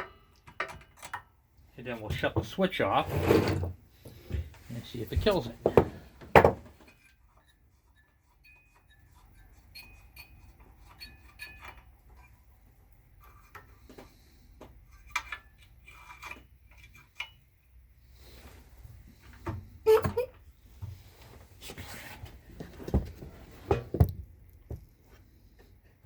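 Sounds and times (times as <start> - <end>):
small metal parts clinking: 6.9 - 12.6.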